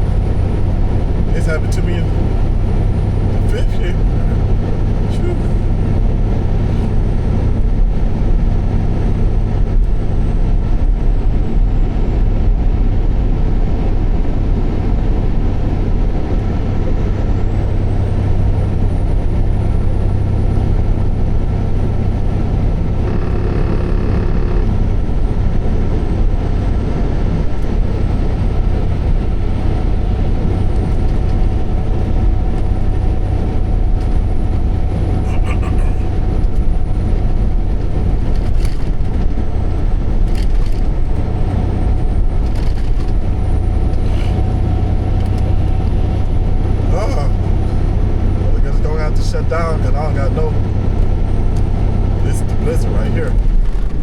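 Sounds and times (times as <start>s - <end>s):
truck engine rumbling: 0.0s - 54.0s
brief pitched tone: 23.0s - 24.7s.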